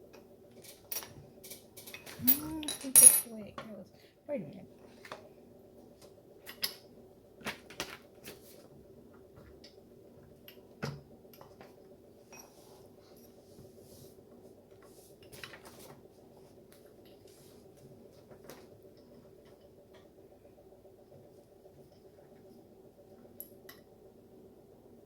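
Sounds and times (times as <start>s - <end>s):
faint steady hum: 0.0s - 25.0s
small metal parts clicking: 0.6s - 3.4s.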